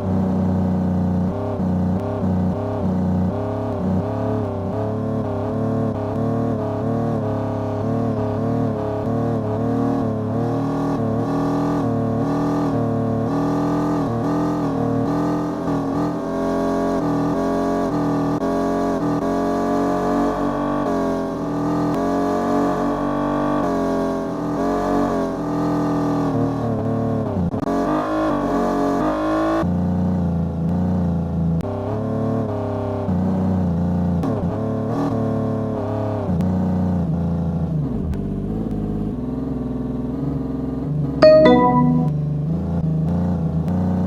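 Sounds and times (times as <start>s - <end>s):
car running on the road: 0.0s - 41.2s, 42.0s - 44.0s
music with bass line and chords: 41.2s - 42.2s.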